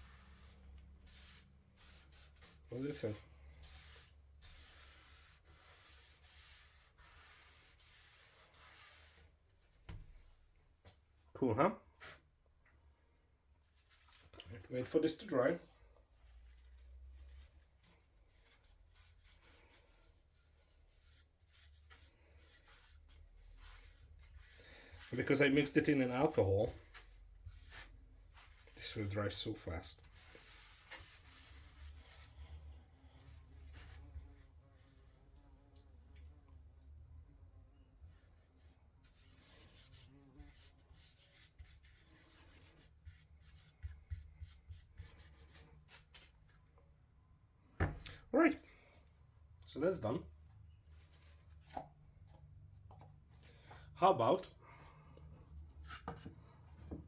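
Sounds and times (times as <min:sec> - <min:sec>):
rubbing strokes on wood: 0:00.0 - 0:09.2, 0:17.8 - 0:29.1, 0:30.0 - 0:32.6.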